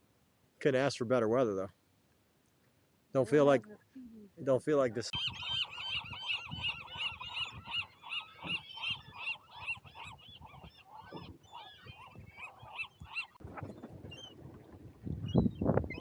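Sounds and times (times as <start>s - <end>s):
gull yelping calls: 5.1s - 13.4s.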